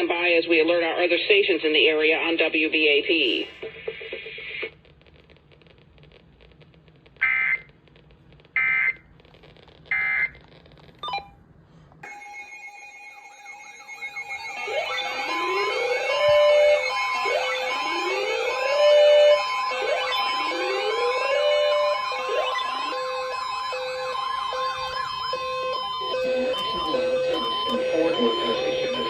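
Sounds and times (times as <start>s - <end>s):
beeps: 11.0s - 11.4s, 12.0s - 29.0s
rising siren-like sweeps: 12.0s - 29.0s
screeching digital data tones: 12.0s - 29.0s
steady alert tone: 12.0s - 29.0s.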